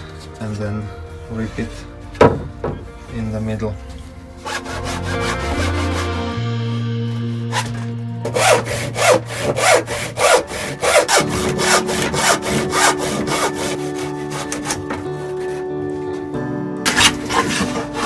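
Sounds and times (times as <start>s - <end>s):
background music: 0.0s - 18.0s
hand saw cutting wood: 4.4s - 16.2s, 16.9s - 18.0s.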